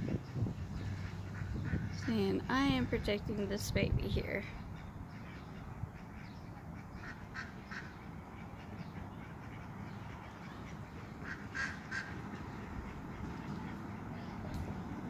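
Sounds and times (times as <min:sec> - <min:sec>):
low background rumble: 0:00.0 - 0:08.4
geese calling: 0:00.0 - 0:14.8.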